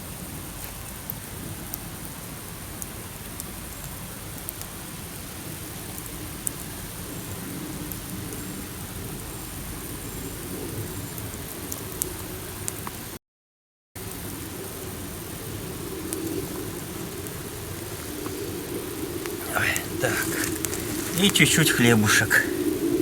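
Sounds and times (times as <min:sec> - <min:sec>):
campfire crackling: 0:00.1 - 0:10.2, 0:14.1 - 0:23.0.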